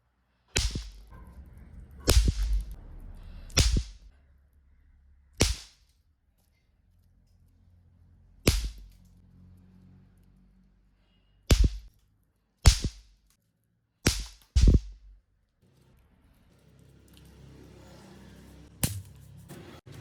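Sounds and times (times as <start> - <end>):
snap pops cracking: 0.5 - 1.1, 2.1 - 2.8, 3.5 - 4.1, 5.4 - 5.8, 8.5 - 9.0, 11.5 - 11.9, 12.6 - 13.1, 14.1 - 15.2.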